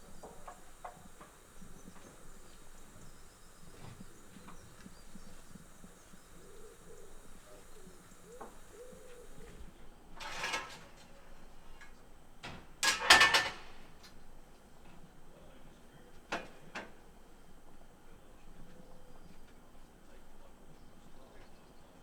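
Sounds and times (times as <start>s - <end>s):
short clanks and scrapes: 10.2s - 11.1s.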